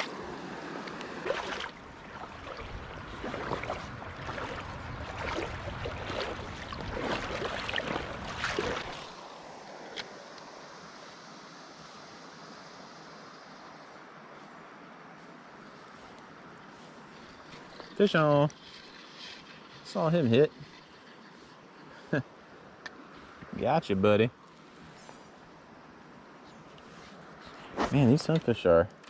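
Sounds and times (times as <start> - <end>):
water splashing and sloshing: 0.0 - 10.1
river current rushing: 0.0 - 14.7.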